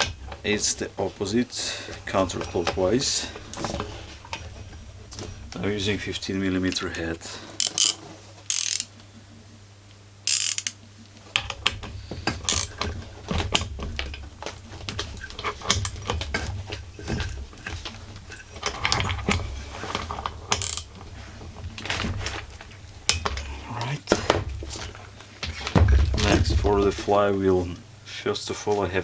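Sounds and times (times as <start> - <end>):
ratchet handle clicking: 7.6 - 8.9, 10.2 - 10.8, 12.5 - 12.8, 20.5 - 20.9
knocks: 24.1 - 27.0.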